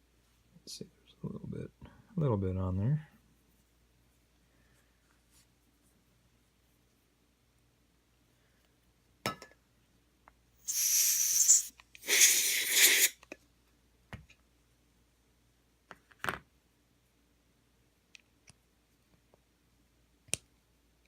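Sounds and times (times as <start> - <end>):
compressed air hissing: 10.6 - 13.2.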